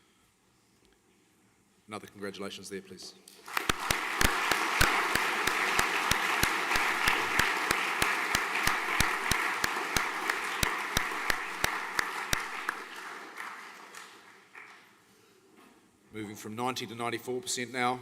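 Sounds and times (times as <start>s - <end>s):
audience applauding: 3.4s - 15.0s.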